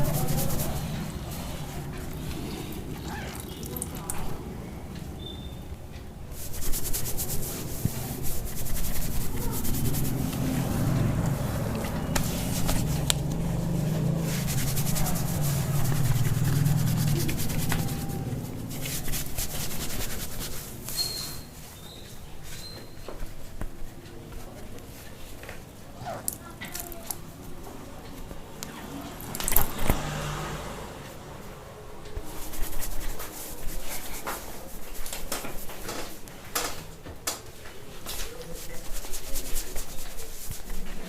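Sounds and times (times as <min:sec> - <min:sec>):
fingertips scratching through hair: 0:00.0 - 0:03.9, 0:06.3 - 0:23.0, 0:29.2 - 0:30.0, 0:32.2 - 0:36.3, 0:37.9 - 0:41.0.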